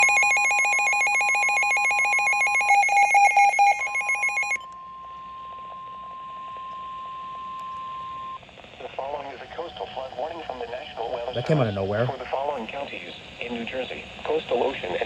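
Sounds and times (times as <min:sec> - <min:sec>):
electronic alert warbling: 0:00.0 - 0:04.6
steady alarm tone: 0:00.0 - 0:08.4
radio hiss: 0:08.6 - 0:15.0.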